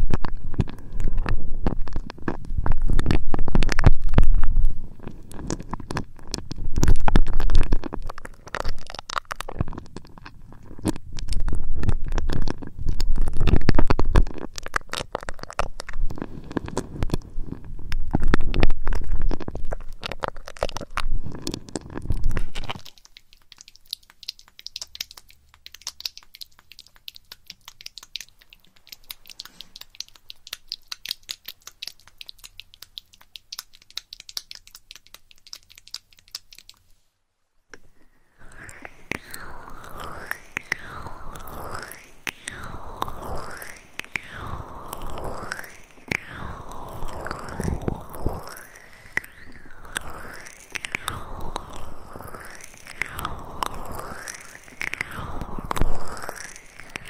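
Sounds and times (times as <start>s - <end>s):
light crinkling and ticking: 0.0s - 37.1s, 37.7s - 57.0s.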